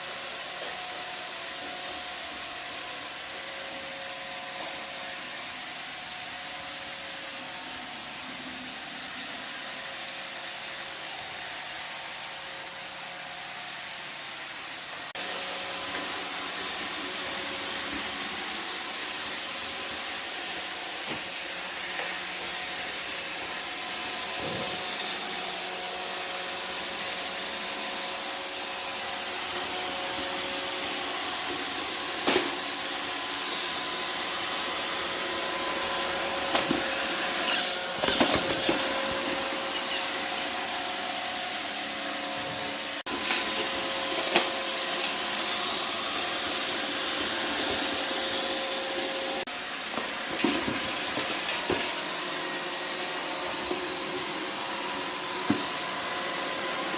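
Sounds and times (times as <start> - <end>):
robot vacuum whirring: 14.6 - 56.9.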